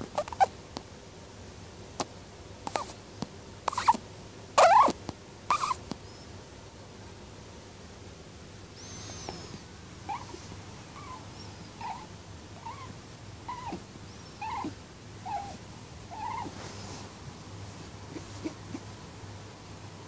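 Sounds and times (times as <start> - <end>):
rabbit snoring squeaky chirps: 0.0 - 0.5, 2.6 - 3.0, 3.6 - 4.0, 4.6 - 6.4, 8.8 - 17.0, 18.0 - 18.9.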